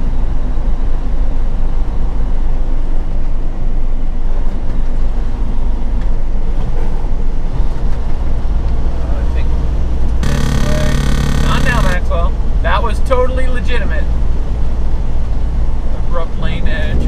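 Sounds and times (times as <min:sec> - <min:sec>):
road noise: 0:00.0 - 0:17.0
diesel engine drone: 0:08.4 - 0:17.0.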